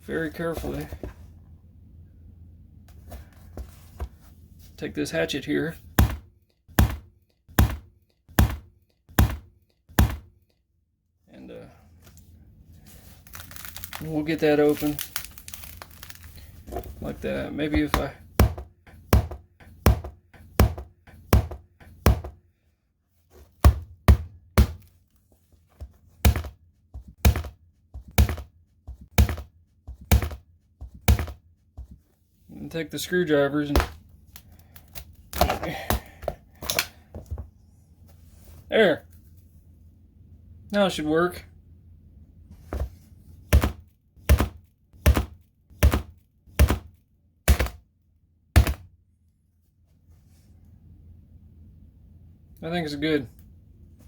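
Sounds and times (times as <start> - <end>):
hatchet chopping blows: 6.0 - 10.3, 27.2 - 28.5, 29.1 - 30.4.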